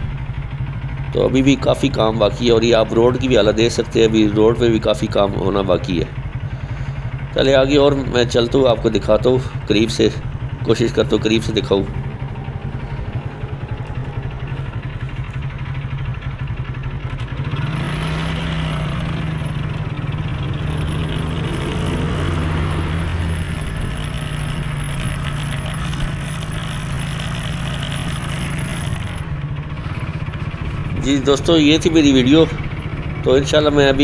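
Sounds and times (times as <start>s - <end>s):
motorcycle engine running: 0.0s - 15.7s
road and traffic noise: 0.0s - 15.7s, 20.5s - 25.7s, 29.9s - 34.0s.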